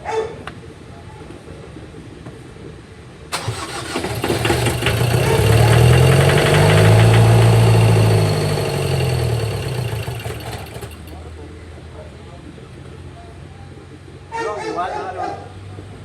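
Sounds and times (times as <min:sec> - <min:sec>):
diesel engine cranking: 0:03.3 - 0:11.3.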